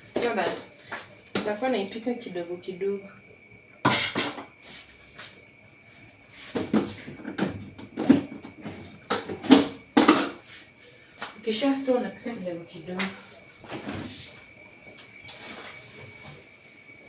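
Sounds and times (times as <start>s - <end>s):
containers clattering: 3.9s - 4.5s, 6.6s - 10.4s
knocks and scrapes of containers: 6.5s - 10.5s.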